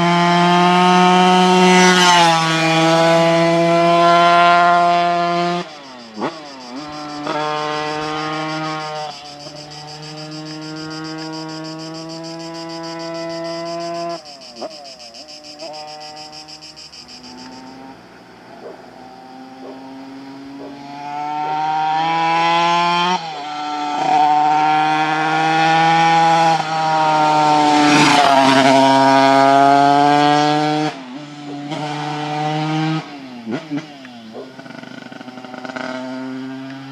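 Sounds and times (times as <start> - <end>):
two-stroke moped engine: 0.0 - 36.9.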